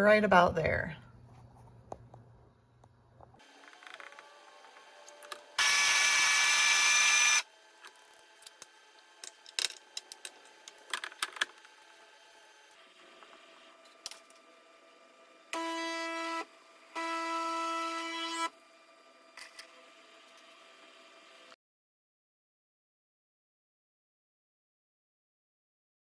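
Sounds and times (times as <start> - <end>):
coffee grinder running: 3.4 - 21.6.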